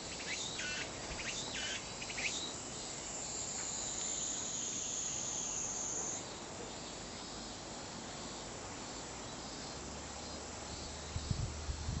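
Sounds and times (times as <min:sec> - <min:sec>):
cicada buzzing trill: 0:00.0 - 0:06.4
faint insect background: 0:00.0 - 0:12.0.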